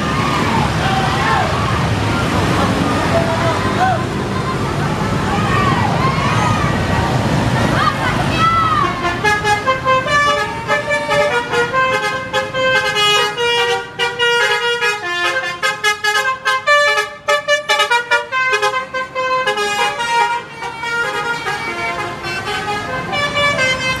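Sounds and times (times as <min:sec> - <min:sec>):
bus multi-tone horns playing tune: 0:08.6 - 0:24.0.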